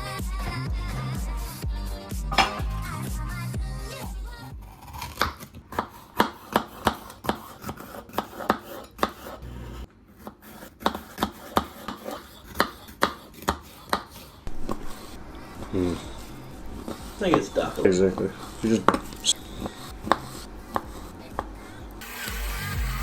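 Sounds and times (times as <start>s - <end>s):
background music with bass beat: 0.0s - 4.4s, 22.0s - 23.0s
knife chopping on wooden board: 4.9s - 9.4s, 10.2s - 14.2s.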